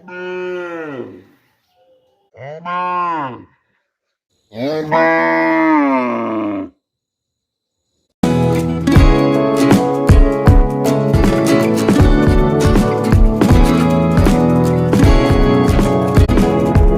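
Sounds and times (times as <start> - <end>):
cow mooing: 4.6 - 6.8
guitar music: 8.2 - 16.9.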